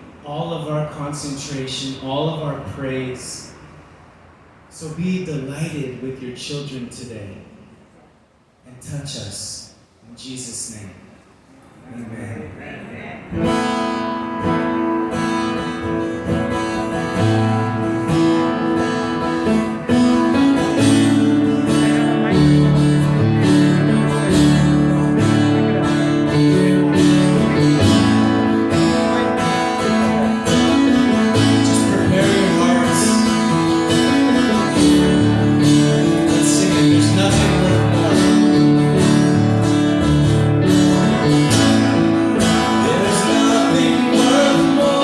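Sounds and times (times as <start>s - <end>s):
strummed acoustic guitar: 13.3s - 45.0s
band playing instrumental intro: 13.6s - 45.0s.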